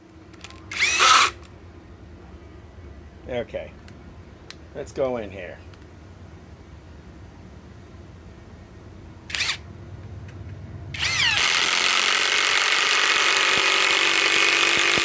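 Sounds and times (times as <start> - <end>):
impact wrench hammering: 11.0 - 15.0.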